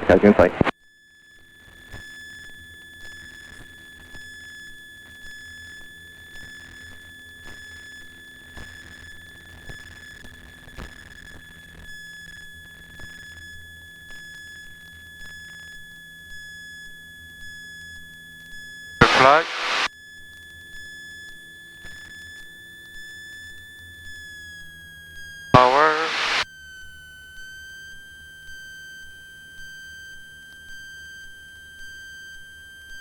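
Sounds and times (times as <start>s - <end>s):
electrical whine and hum: 0.0s - 0.7s, 19.0s - 19.9s, 25.6s - 26.4s.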